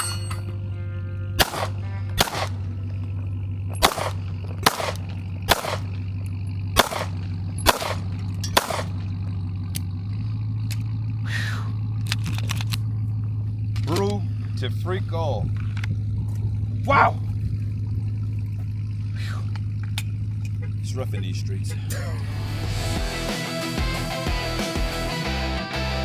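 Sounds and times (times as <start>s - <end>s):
steel targets ringing: 0.0s - 0.8s
steady low hum: 0.0s - 23.2s
gunshots: 1.4s - 2.8s, 3.8s - 6.0s, 6.8s - 9.1s.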